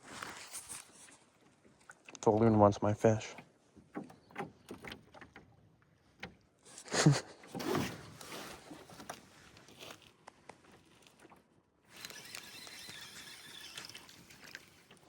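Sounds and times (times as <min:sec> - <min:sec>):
water splashing at a boat: 0:01.2 - 0:06.8, 0:10.6 - 0:15.0.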